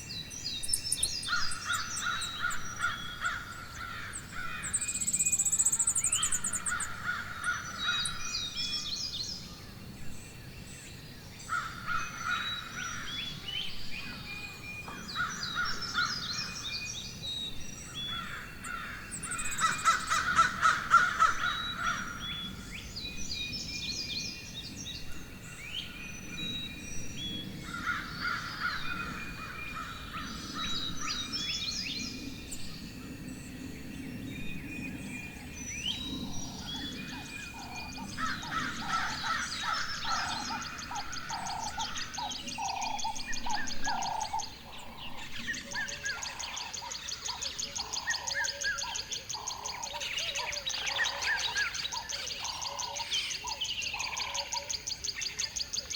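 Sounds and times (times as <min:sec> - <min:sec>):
lower-pitched repeated bird calls: 0:00.0 - 0:08.9, 0:11.4 - 0:23.6, 0:34.8 - 0:55.9
birds chirping and singing: 0:00.0 - 0:55.9.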